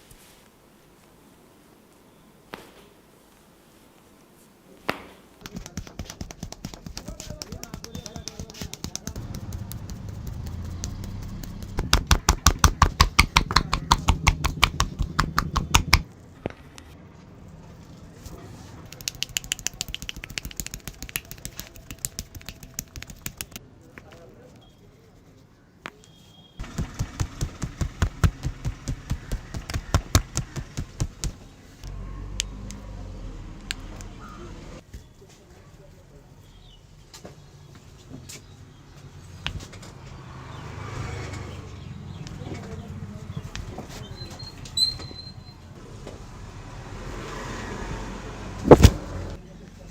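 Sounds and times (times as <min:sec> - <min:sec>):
hands slapping in massage: 0:04.9 - 0:16.1, 0:18.8 - 0:23.6, 0:26.8 - 0:31.4, 0:48.7 - 0:49.0.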